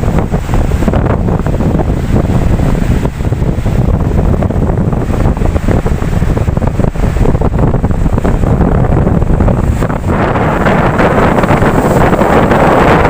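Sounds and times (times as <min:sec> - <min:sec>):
ocean waves breaking: 0:00.0 - 0:13.0
rushing hiss of surf: 0:00.0 - 0:13.0
wind buffeting microphone: 0:00.0 - 0:13.0.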